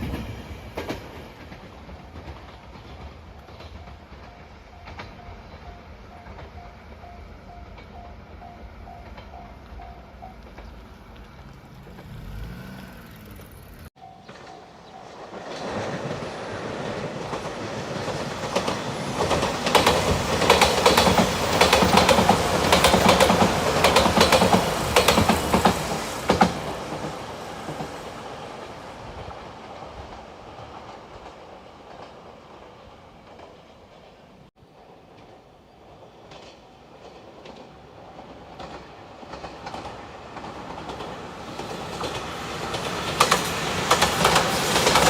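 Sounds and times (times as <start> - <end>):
train passing at speed: 0.0 - 45.0
wheels clattering over rail joints: 8.7 - 28.1, 34.7 - 45.0.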